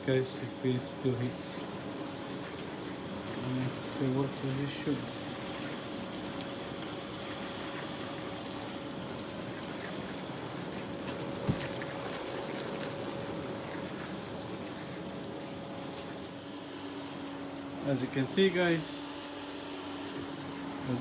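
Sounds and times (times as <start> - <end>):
water spraying and splashing: 0.0 - 16.4
steady motor hum: 0.0 - 21.0.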